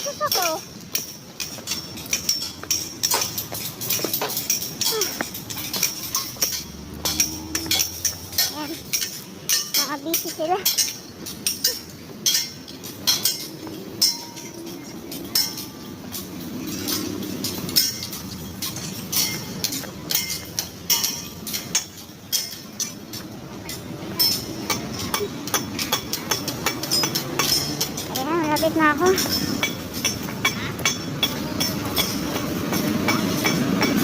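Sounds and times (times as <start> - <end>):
metallic clinks: 0.0 - 34.0
hammer striking steel: 0.4 - 34.0
low steady rumble: 0.8 - 9.7.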